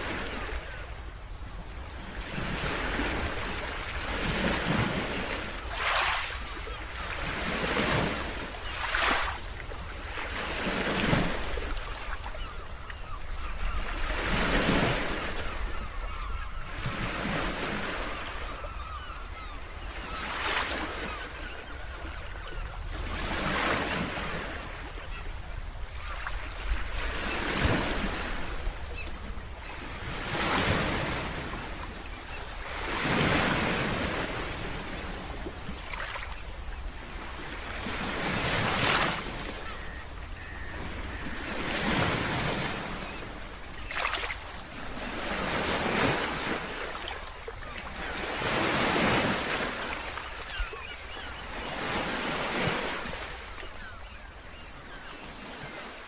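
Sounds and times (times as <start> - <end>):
waves breaking on shore: 0.0 - 56.0.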